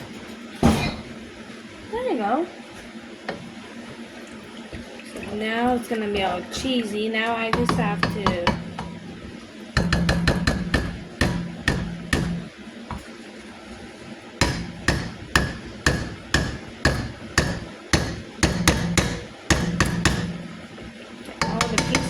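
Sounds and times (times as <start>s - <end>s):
spoon knocking on cooking pot: 7.5s - 9.1s, 9.8s - 13.0s, 14.4s - 20.5s, 21.4s - 22.0s.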